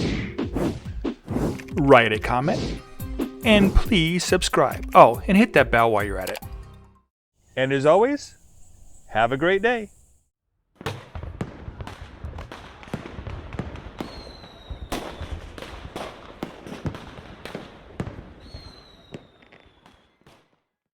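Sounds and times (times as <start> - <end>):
sharp bangs and pops: 0.0 - 4.1, 10.8 - 20.6.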